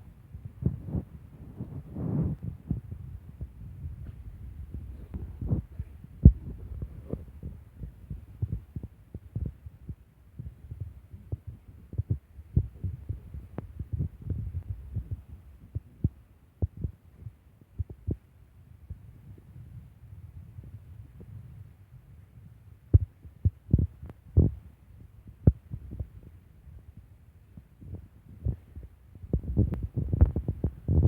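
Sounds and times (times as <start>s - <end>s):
low rumble: 0.4s - 8.8s.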